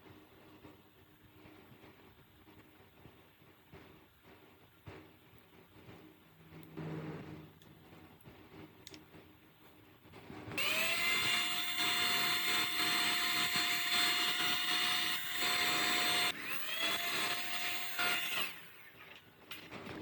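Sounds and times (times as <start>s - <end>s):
power tool motor whining: 10.6s - 19.3s.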